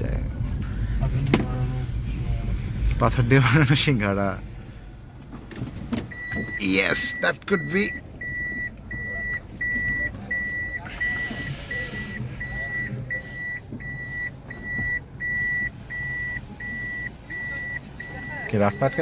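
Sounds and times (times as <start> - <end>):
low engine rumble: 0.0 - 19.0
reversing warning beeper: 6.1 - 19.0.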